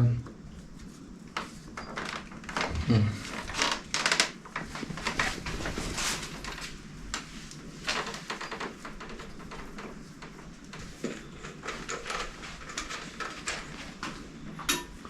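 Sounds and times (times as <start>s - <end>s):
bicycle tools knocking and clicking: 11.0s - 15.0s.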